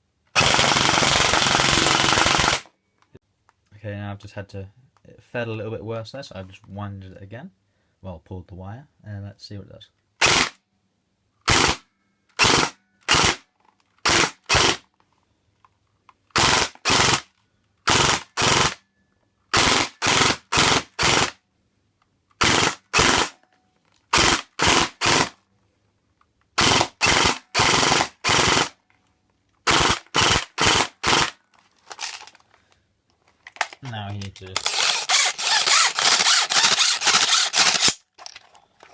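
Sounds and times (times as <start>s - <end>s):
airsoft rifle firing bursts: 0.4s - 2.6s, 14.0s - 14.8s, 16.4s - 17.3s, 17.9s - 18.8s, 19.5s - 21.4s, 22.4s - 23.4s, 24.1s - 25.4s, 26.6s - 28.8s, 29.7s - 31.4s, 34.6s - 38.0s.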